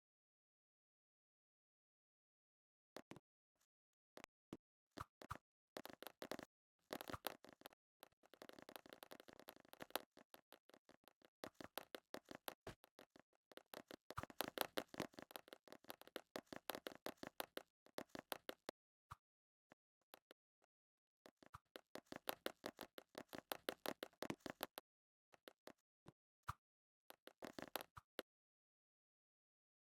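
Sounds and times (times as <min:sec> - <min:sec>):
faint clicking and crackling: 0:05.0 - 0:18.8, 0:21.2 - 0:25.8, 0:27.1 - 0:28.2.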